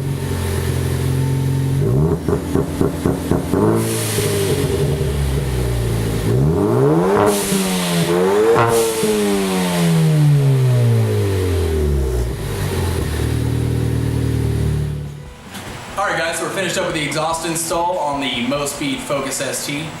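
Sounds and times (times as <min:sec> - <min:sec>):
car engine revving: 0:00.0 - 0:15.9.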